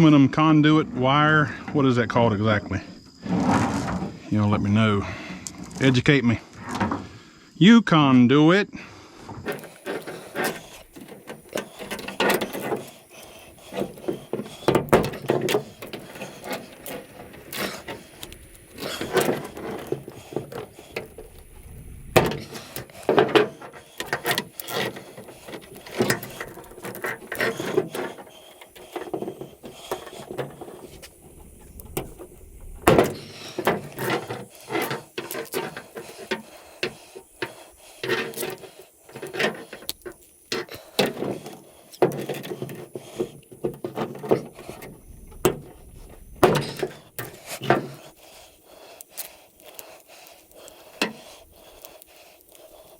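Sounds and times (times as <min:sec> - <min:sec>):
metal cable being cut and bent: 0:09.5 - 0:21.3, 0:22.2 - 0:31.1.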